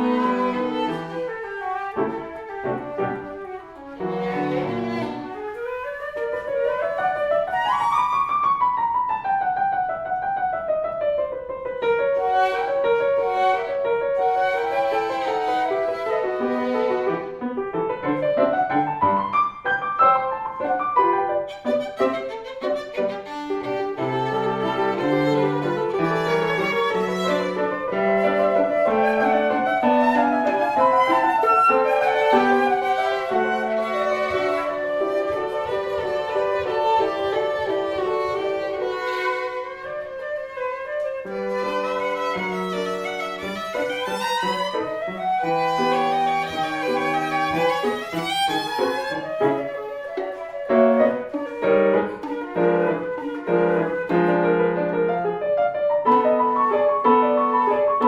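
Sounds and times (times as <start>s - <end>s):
gliding instrumental trio music: 19.4s - 58.0s.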